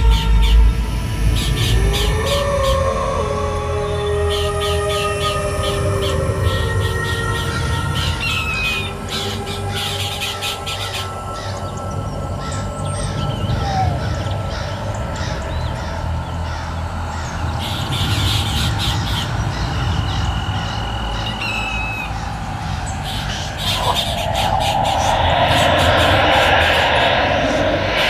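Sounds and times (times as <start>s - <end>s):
low drone: 0.0s - 28.0s
bird squawks: 8.0s - 11.7s, 12.4s - 28.0s
rushing noise: 16.1s - 28.0s.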